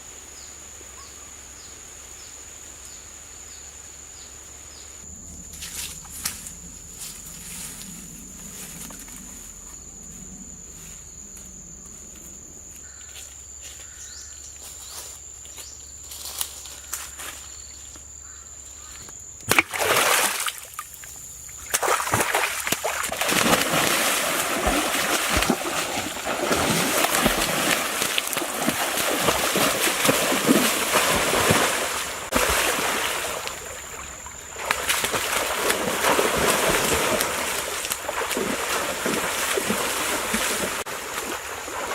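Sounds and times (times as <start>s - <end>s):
water splashing and sloshing: 19.5s - 41.9s.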